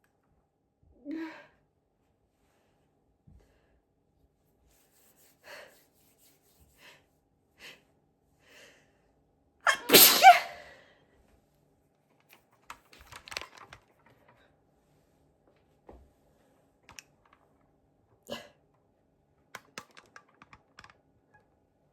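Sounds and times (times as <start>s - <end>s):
loud high-pitched sneeze: 9.7s - 10.7s.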